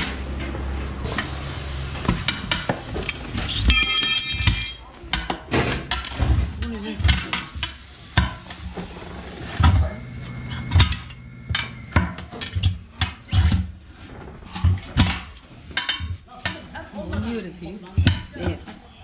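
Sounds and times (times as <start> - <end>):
hand tools clanking on steel rim: 2.2 - 6.2.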